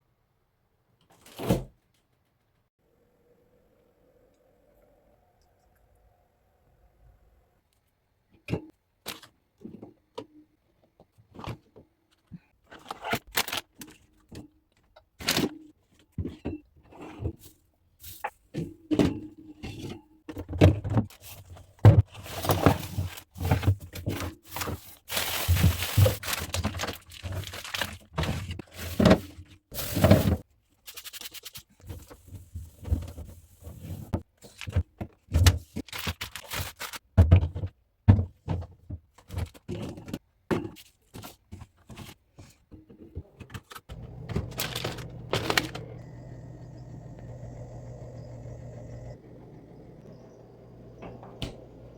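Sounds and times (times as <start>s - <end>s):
fridge containers clattering: 43.9s - 51.9s
steady low hum: 43.9s - 51.9s.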